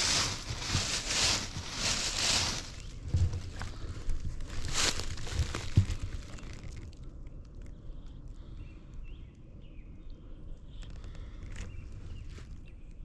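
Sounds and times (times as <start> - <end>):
microphone handling noise: 0.0 - 6.5
wind rumbling on microphone: 0.0 - 13.0.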